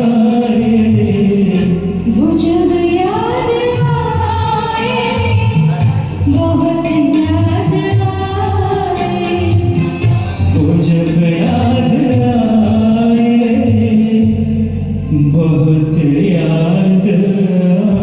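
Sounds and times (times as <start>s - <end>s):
steady low beat: 0.0s - 16.5s
film song duet karaoke track: 0.0s - 18.0s.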